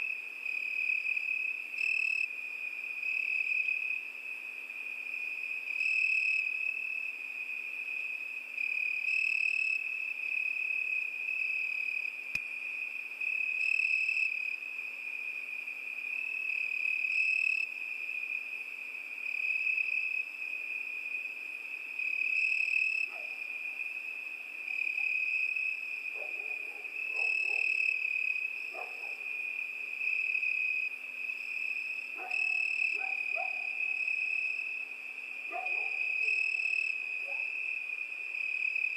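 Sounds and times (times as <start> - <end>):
crickets chirring: 0.0 - 38.9.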